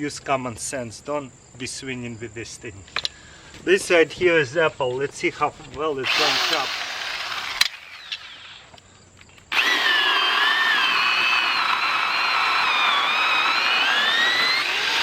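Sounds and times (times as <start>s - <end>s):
electric chainsaw cutting wood: 6.0s - 8.7s, 9.5s - 15.0s.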